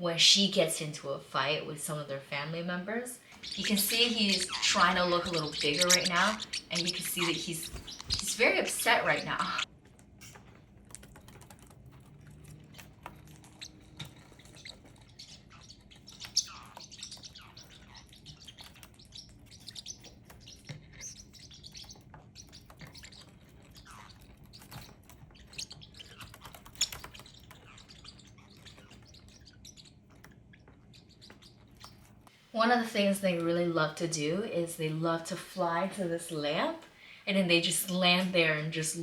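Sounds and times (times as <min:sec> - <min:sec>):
high bird chirps: 0:03.2 - 0:09.7, 0:13.5 - 0:32.0
sharp loud bird calls: 0:03.2 - 0:09.7
small clicks and scratches: 0:07.7 - 0:08.3, 0:09.6 - 0:32.4.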